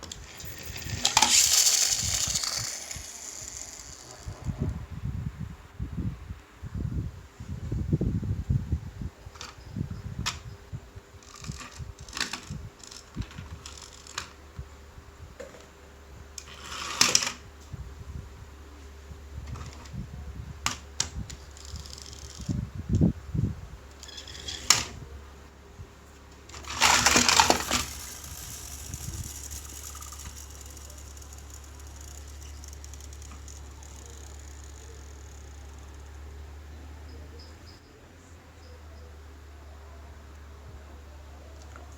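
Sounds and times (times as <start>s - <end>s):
small metal parts clinking: 0.0s - 4.5s, 11.2s - 14.3s, 21.3s - 22.5s, 23.9s - 24.9s, 26.5s - 36.3s
metal toy rattling: 0.0s - 4.6s, 11.2s - 14.3s, 21.3s - 22.6s, 24.0s - 24.9s, 26.5s - 36.3s
toy cars knocking down: 0.0s - 4.6s, 11.2s - 14.4s, 16.4s - 17.4s, 20.6s - 22.5s, 24.0s - 25.0s, 26.5s - 36.2s
faint low hum: 0.0s - 41.9s.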